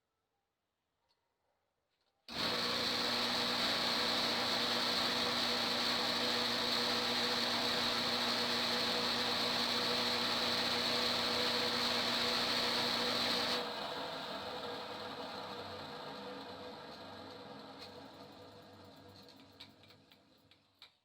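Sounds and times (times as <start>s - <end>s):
lathe motor hum and whine: 2.3s - 16.8s.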